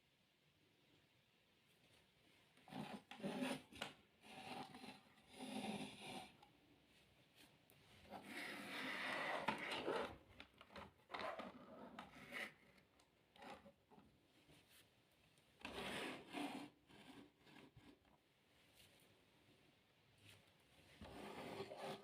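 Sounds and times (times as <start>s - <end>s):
toys and packaging rubbing: 2.6s - 6.4s, 8.1s - 13.6s.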